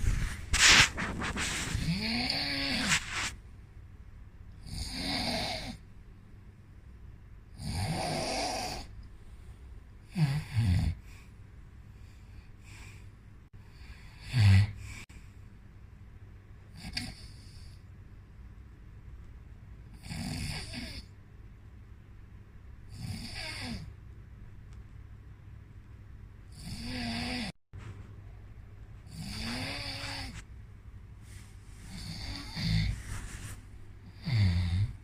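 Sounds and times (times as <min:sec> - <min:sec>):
person snoring: 0:01.3 - 0:03.4, 0:04.7 - 0:05.8, 0:07.6 - 0:08.9, 0:10.1 - 0:11.0, 0:13.8 - 0:15.0, 0:26.5 - 0:27.5, 0:29.1 - 0:30.4, 0:31.8 - 0:33.1, 0:34.0 - 0:35.0.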